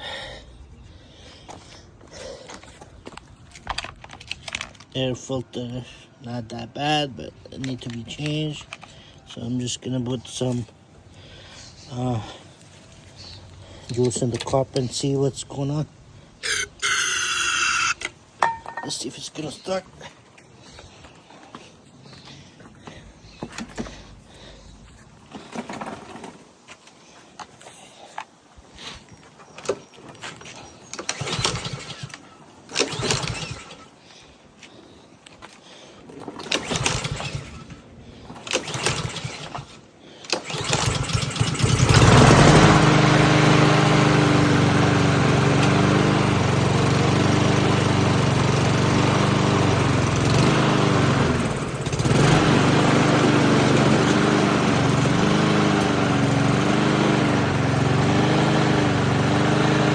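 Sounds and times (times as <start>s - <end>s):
recoil starter pulls: 2.1s - 5.3s, 7.5s - 9.0s, 13.6s - 15.8s, 16.4s - 19.0s, 22.9s - 24.6s, 25.2s - 26.6s, 29.5s - 34.0s, 36.0s - 59.9s
lawnmower engine running: 10.3s - 18.9s, 22.8s - 26.5s, 29.6s - 34.0s, 36.0s - 59.9s.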